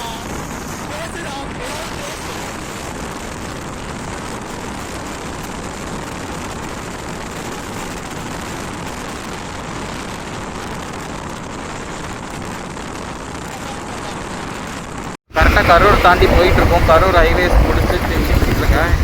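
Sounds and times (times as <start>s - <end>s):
rushing wind and road noise: 0.0s - 19.0s.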